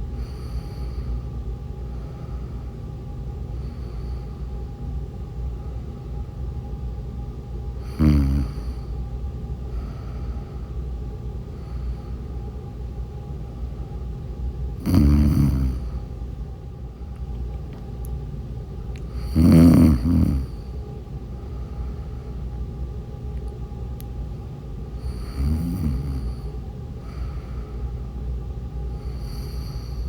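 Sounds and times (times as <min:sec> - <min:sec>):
low background hum: 0:00.0 - 0:30.0
woman snoring: 0:07.8 - 0:08.9, 0:14.8 - 0:16.0, 0:19.1 - 0:20.6, 0:25.0 - 0:26.5, 0:29.0 - 0:30.0.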